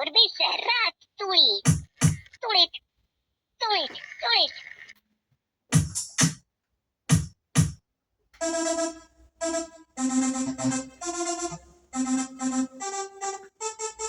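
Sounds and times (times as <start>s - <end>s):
sharp electronic beat hits: 1.7s - 2.2s, 5.7s - 6.4s, 7.1s - 7.8s
synthesizer melody: 8.4s - 14.0s.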